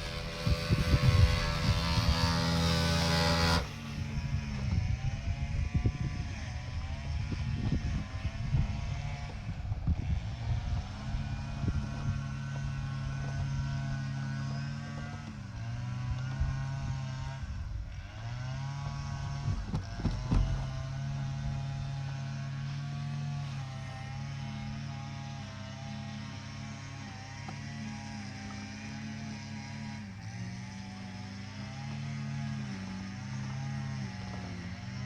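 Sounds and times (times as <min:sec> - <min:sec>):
mower whining hum: 0:00.0 - 0:35.0.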